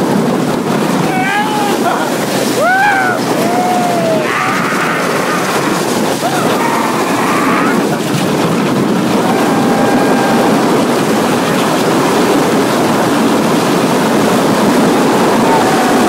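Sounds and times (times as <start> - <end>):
wind rushing on microphone: 0.0 - 16.0.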